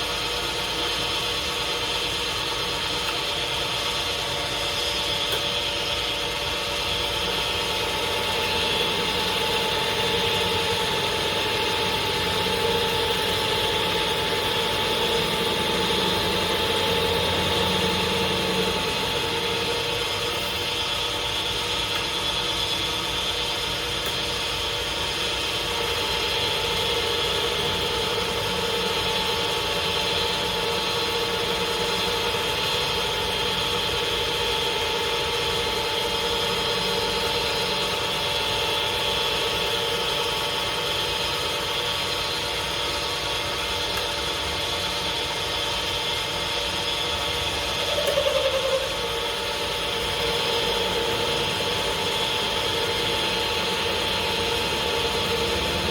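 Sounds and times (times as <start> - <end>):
lathe running with whine: 0.0 - 55.9.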